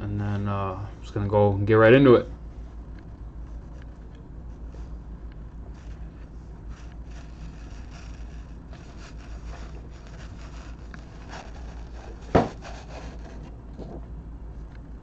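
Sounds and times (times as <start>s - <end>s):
card packs rubbing and scraping: 6.7s - 13.5s
sharp knock on table: 12.3s - 12.6s.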